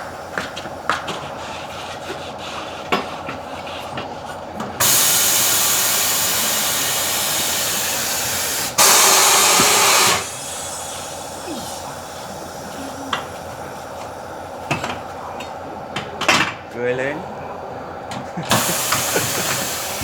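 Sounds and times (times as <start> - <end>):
compressed air hissing: 4.8 - 15.6, 18.5 - 20.0.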